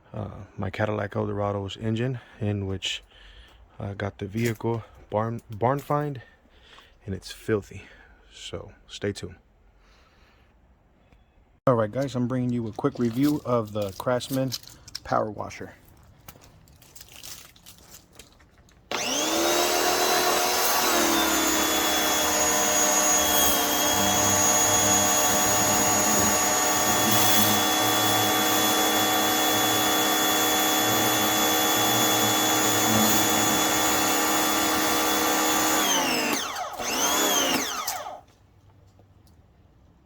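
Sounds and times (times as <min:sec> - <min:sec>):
pressure washer motor whining: 0:18.9 - 0:38.3.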